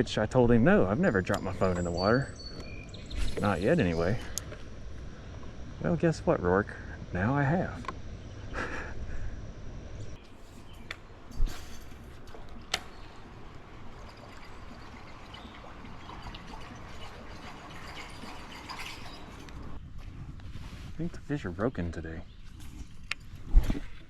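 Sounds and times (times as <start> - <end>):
water trickling and lapping: 10.3 - 19.8.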